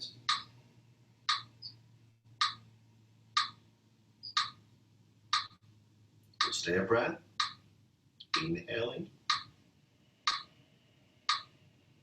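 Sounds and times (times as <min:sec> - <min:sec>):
faint low hum: 0:00.0 - 0:12.0
steady ticking: 0:00.2 - 0:00.5, 0:01.2 - 0:01.7, 0:02.4 - 0:02.6, 0:03.4 - 0:03.6, 0:04.2 - 0:04.6, 0:05.3 - 0:05.6, 0:06.4 - 0:06.7, 0:07.4 - 0:07.6, 0:08.2 - 0:08.5, 0:09.3 - 0:09.5, 0:10.3 - 0:10.5, 0:11.3 - 0:11.5.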